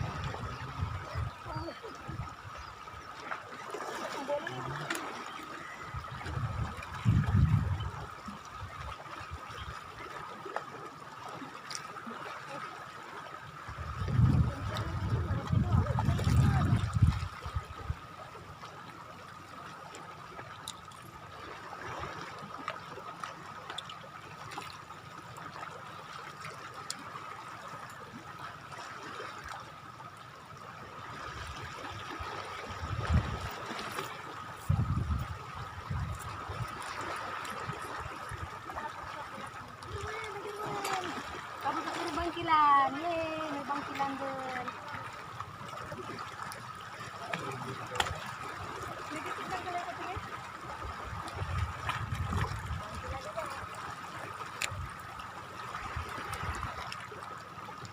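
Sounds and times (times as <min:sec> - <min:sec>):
low rumbling: 0:00.0 - 0:02.6, 0:13.7 - 0:18.0
water lapping at shoreline: 0:00.0 - 0:57.9.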